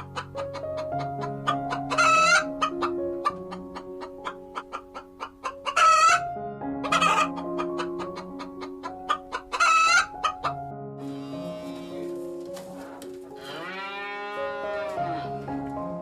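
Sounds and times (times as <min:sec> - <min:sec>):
chicken squawking: 0:00.0 - 0:06.2, 0:06.8 - 0:12.1.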